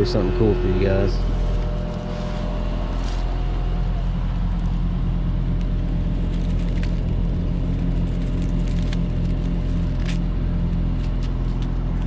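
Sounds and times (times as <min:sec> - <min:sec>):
condenser fan turning: 0:00.0 - 0:12.0
heat pump electrical hum: 0:00.0 - 0:12.0.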